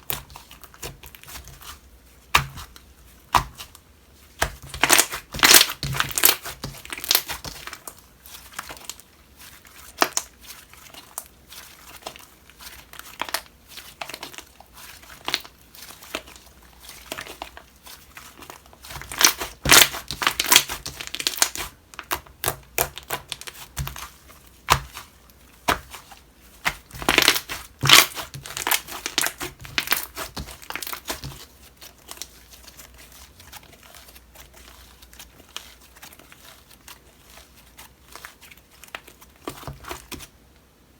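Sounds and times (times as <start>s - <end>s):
slime crackling and popping: 4.4s - 11.2s, 15.2s - 32.3s.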